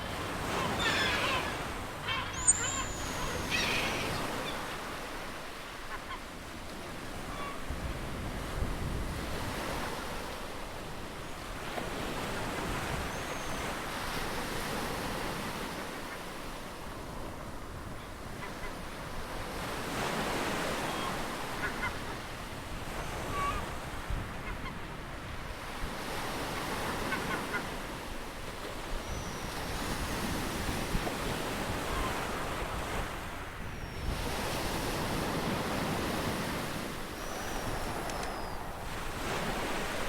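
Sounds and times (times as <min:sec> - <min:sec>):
bird calls: 0:00.0 - 0:06.4, 0:13.0 - 0:13.8, 0:28.8 - 0:30.5, 0:33.6 - 0:40.0
ocean waves breaking: 0:00.0 - 0:13.0, 0:18.3 - 0:40.0
thin falling whistles: 0:37.2 - 0:38.8.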